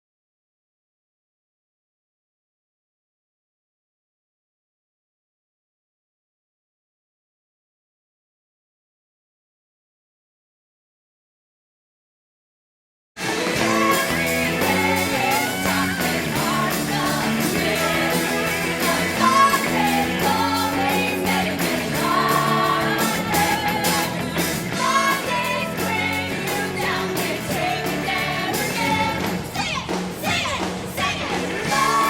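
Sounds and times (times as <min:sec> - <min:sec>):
pop-rock song with vocals: 0:13.2 - 0:32.0.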